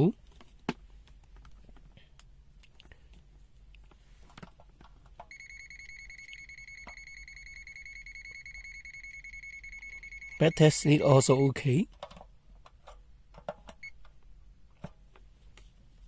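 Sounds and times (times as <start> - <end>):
multimeter buzzer high-pitched beep: 5.3 - 11.6.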